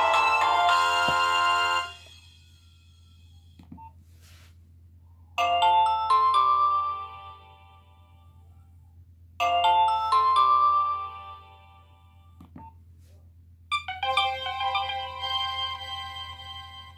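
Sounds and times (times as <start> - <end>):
mobile phone ringtone: 0.0 - 2.2, 13.7 - 16.9.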